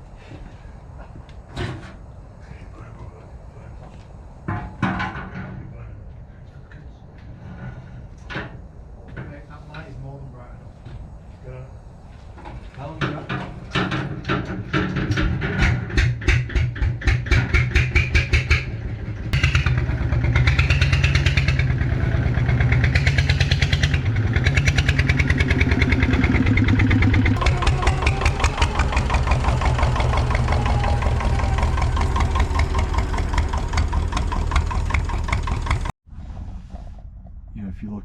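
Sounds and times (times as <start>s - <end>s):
engine running: 13.7s - 37.4s.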